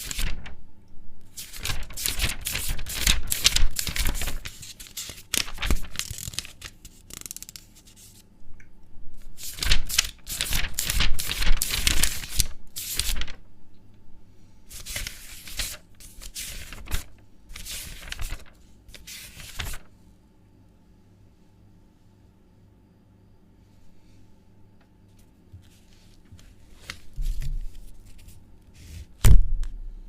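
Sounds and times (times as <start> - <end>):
paper rustling: 0.0 - 0.6, 1.3 - 8.2, 9.2 - 13.4, 14.7 - 19.9, 25.1 - 29.3.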